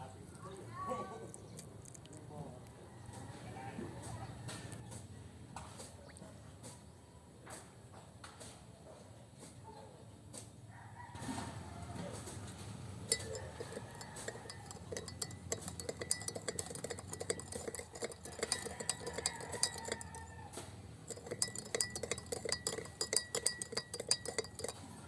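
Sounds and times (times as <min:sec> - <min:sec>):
spoon clinking in a glass: 0:13.0 - 0:24.9.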